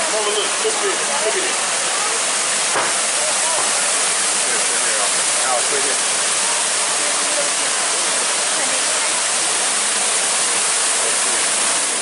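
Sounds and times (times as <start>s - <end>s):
water rushing and splashing: 0.0s - 12.0s.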